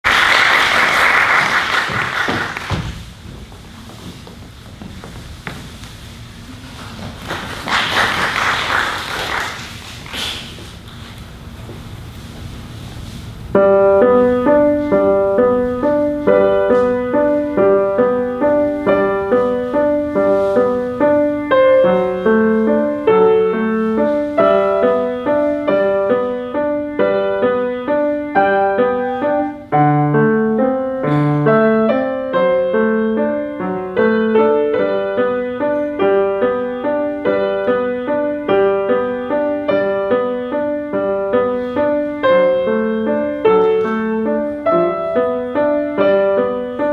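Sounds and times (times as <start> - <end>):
piano playing broken chords: 13.4 - 46.9.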